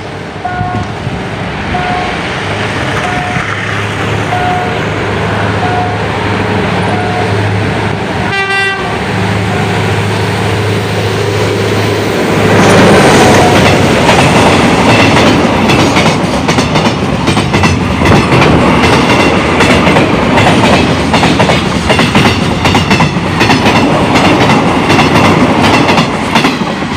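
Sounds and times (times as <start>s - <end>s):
locomotive engine droning: 0.0s - 14.9s
train rumbling past: 0.0s - 26.9s
train horn toot: 0.4s - 0.9s, 1.8s - 2.2s, 3.0s - 3.5s, 4.3s - 4.8s, 5.6s - 6.0s, 6.9s - 7.4s, 8.3s - 9.7s
wheels clacking over rail joints: 12.2s - 26.9s.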